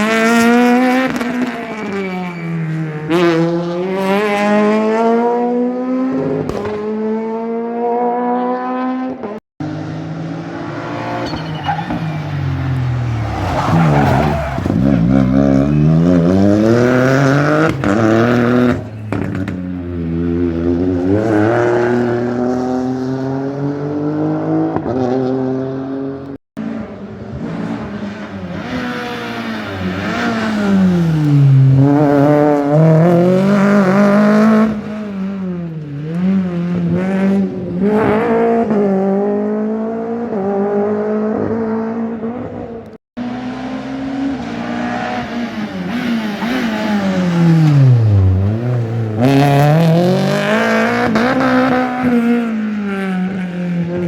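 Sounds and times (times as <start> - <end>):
rally cars revving past: 0.0 - 54.0.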